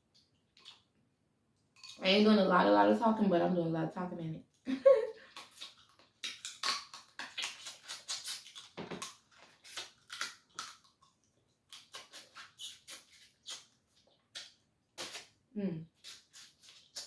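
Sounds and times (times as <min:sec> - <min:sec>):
wet mouth smacks: 0:05.3 - 0:10.9, 0:11.7 - 0:13.7, 0:14.3 - 0:15.3
crab shell cracking: 0:05.4 - 0:10.9.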